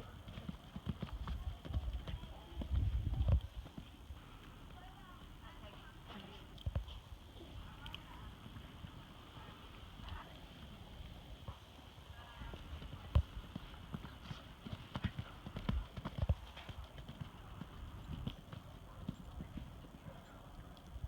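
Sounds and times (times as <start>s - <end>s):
pony hoofbeats: 0.0s - 21.0s.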